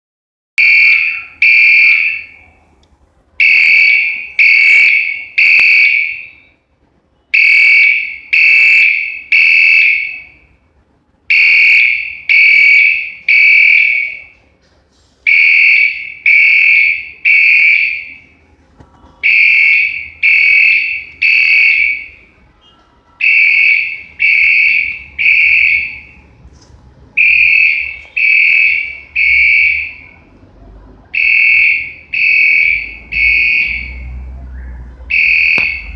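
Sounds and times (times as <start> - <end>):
fire alarm horn blasts: 0.6 - 2.5, 3.4 - 6.6, 7.2 - 10.5, 11.3 - 14.4, 15.3 - 18.3, 19.2 - 26.2, 27.2 - 30.2, 31.2 - 34.1, 35.1 - 35.9.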